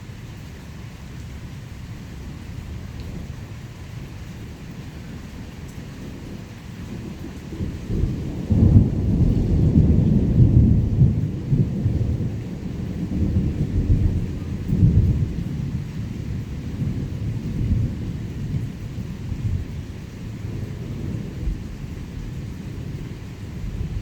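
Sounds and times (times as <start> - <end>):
steady rain: 0.0 - 24.0
rolling thunder: 6.0 - 24.0.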